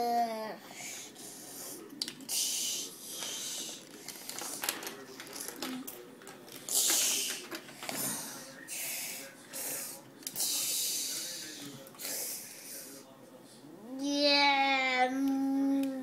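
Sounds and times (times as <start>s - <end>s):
plastic pieces clicking: 4.1s - 8.0s.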